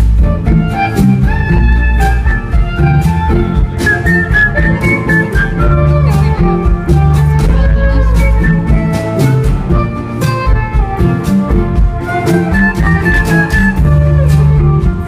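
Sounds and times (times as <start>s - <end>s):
bass line: 0.0s - 15.0s
drum beat: 0.0s - 15.0s
high melody line: 0.0s - 15.0s
live band music: 0.0s - 15.0s.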